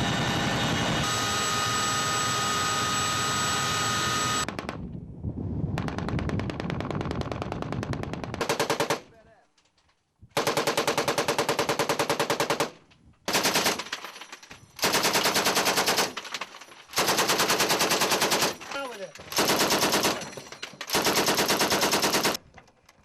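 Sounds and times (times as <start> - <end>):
machine gun firing bursts: 7.4 - 9.1, 10.4 - 14.0, 14.8 - 16.2, 16.9 - 18.7, 19.3 - 20.3, 20.9 - 22.4.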